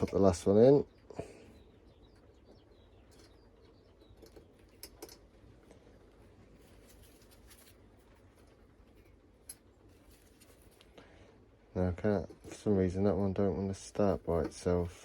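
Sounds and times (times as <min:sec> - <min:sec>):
faint clicks of small metal parts: 0:03.1 - 0:11.1.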